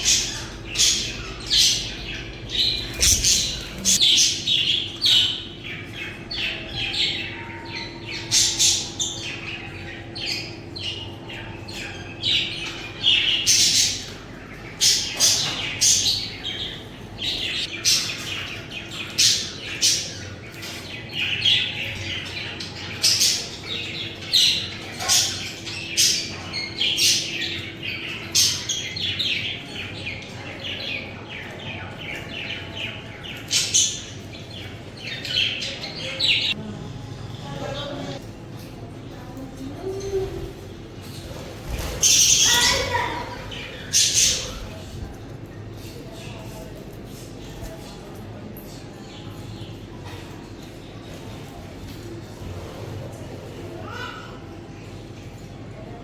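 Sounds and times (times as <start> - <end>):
budgerigars chirping: 0.0 - 27.6.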